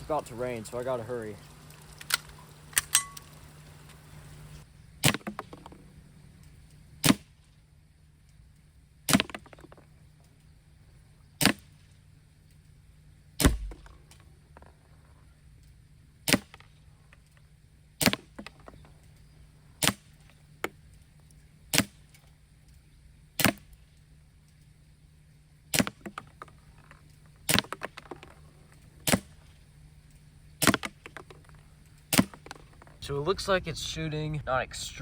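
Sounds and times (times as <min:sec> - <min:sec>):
airsoft pistol shots: 0:07.0 - 0:07.4, 0:13.4 - 0:14.0, 0:16.2 - 0:16.7.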